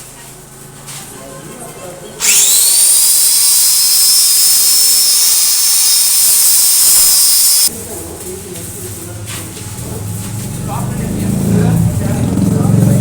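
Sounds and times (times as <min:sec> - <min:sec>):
high-speed grinder whining: 0:02.2 - 0:07.7.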